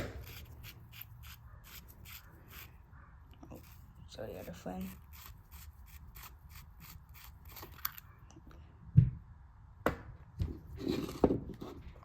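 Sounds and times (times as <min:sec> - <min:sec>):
small clicks from handling parts: 0:07.2 - 0:08.4.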